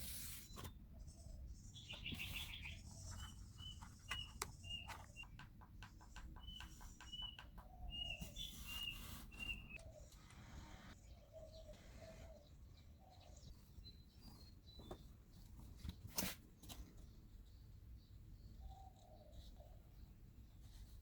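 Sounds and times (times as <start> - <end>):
faint bird calls: 0.2 - 13.5.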